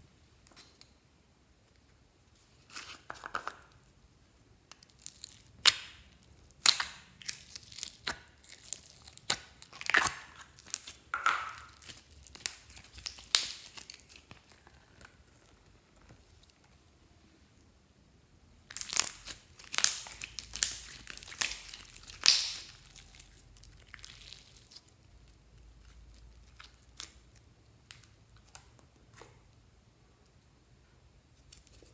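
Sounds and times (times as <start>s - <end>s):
slime crackling and popping: 4.7s - 16.5s, 18.6s - 28.7s.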